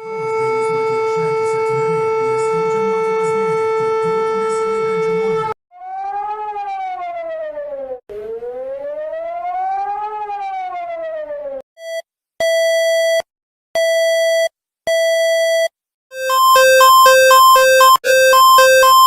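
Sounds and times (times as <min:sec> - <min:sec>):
siren wailing: 0:00.0 - 0:11.6, 0:16.2 - 0:19.0
short beeps: 0:13.8 - 0:19.0
high-low two-tone alarm: 0:16.1 - 0:19.0.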